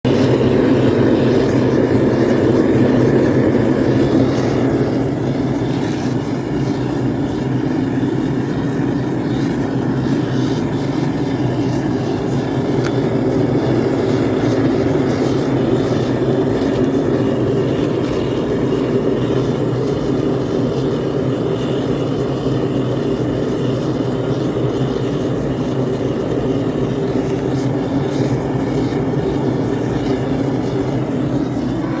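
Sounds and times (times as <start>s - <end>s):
furnace burner flame rushing: 0.0s - 32.0s
low hum: 25.0s - 32.0s.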